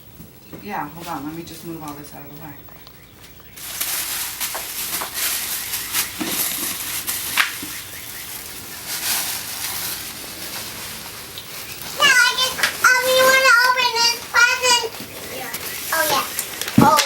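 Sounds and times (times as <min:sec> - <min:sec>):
wrapping paper crinkling: 0:03.5 - 0:17.0.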